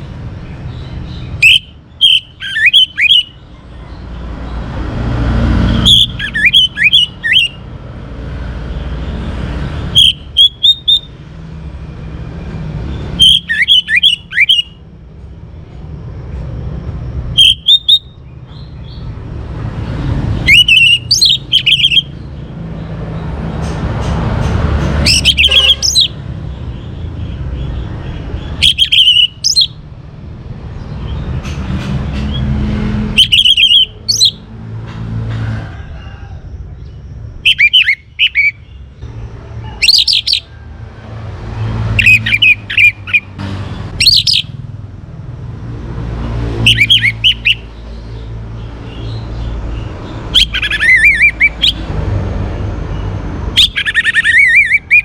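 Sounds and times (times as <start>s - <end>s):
bird singing whistled phrases: 1.1s - 3.4s, 5.8s - 7.6s, 10.0s - 11.1s, 13.2s - 14.8s, 17.4s - 18.7s, 20.5s - 22.1s, 28.6s - 29.8s, 33.2s - 34.4s, 37.5s - 38.7s, 39.8s - 40.5s, 44.0s - 44.5s, 46.6s - 47.7s, 50.4s - 51.8s.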